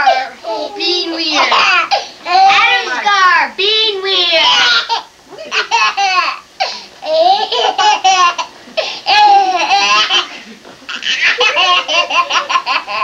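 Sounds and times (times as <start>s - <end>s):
baby laughing: 4.4s - 13.0s.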